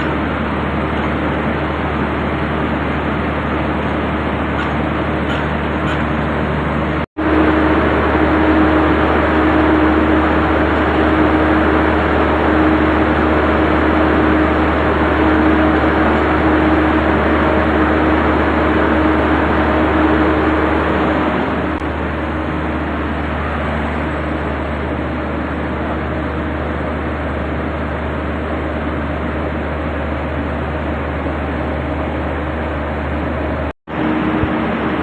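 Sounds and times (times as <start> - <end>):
machinery drone and hum: 0.0 - 35.0.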